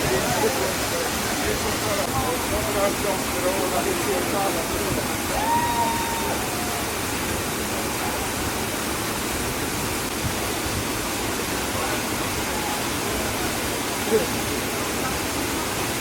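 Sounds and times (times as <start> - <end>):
waterfall rushing: 0.0 - 16.0.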